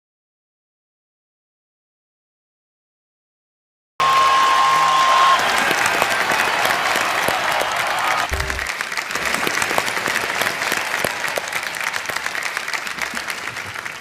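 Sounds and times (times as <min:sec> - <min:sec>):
studio audience applauding: 0:04.0 - 0:14.0.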